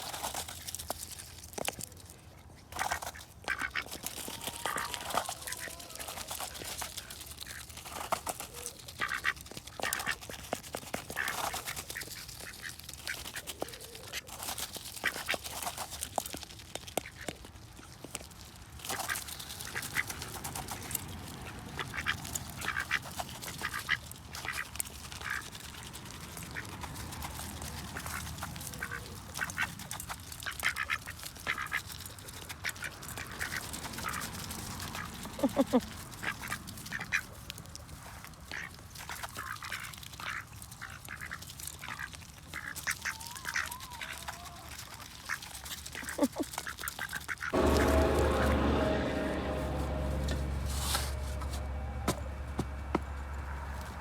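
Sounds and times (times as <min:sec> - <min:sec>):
ducks quacking: 0:02.8 - 0:14.2, 0:18.9 - 0:54.0
low steady rumble: 0:47.5 - 0:54.0.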